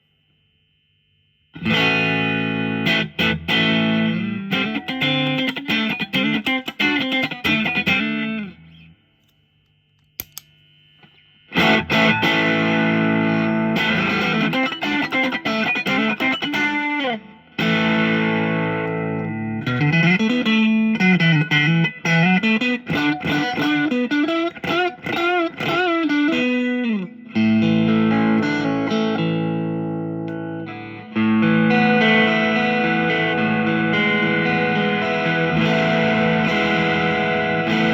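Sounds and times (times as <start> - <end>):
faint amp hum: 0.0 - 37.9
distorted electric guitar: 1.6 - 8.9, 11.5 - 37.9
click: 9.2 - 11.2.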